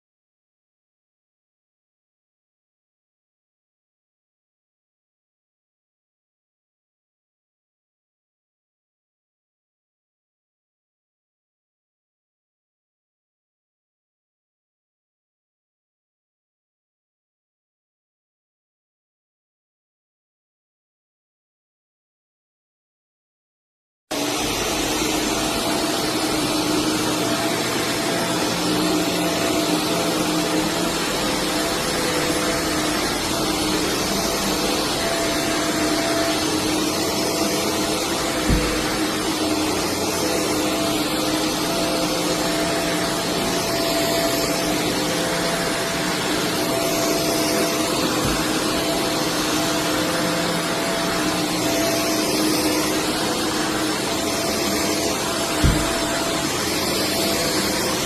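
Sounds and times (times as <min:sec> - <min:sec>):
vacuum cleaner running: 0:24.1 - 0:58.0.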